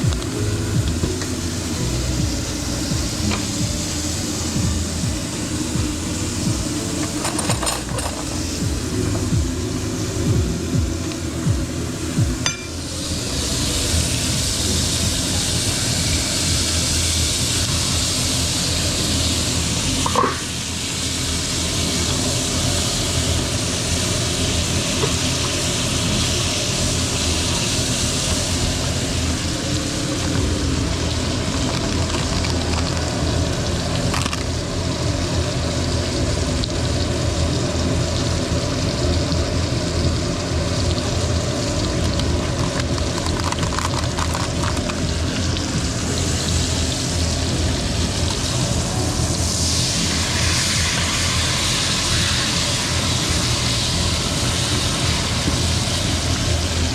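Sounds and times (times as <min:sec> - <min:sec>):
steak sizzling in a frying pan: 0:00.0 - 0:56.9.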